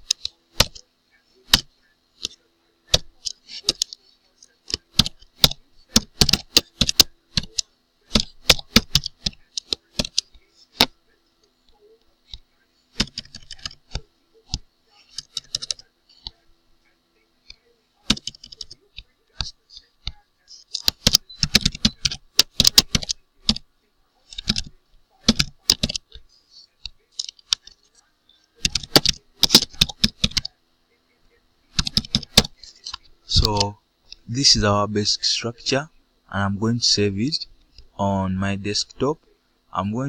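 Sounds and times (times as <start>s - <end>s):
keyboard typing: 0.0s - 0.8s, 1.5s - 4.0s, 4.6s - 10.9s, 12.3s - 16.4s, 17.4s - 23.6s, 24.2s - 26.2s, 28.6s - 30.5s, 31.7s - 33.7s
keyboard key clicks: 25.3s - 26.0s, 28.6s - 30.5s, 31.8s - 33.7s.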